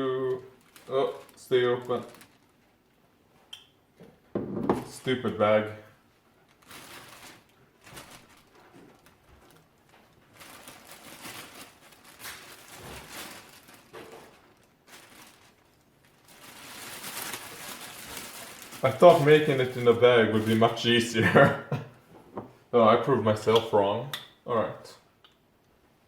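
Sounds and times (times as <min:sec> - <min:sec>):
plastic bag rustling: 0:00.0 - 0:03.4, 0:04.4 - 0:21.2.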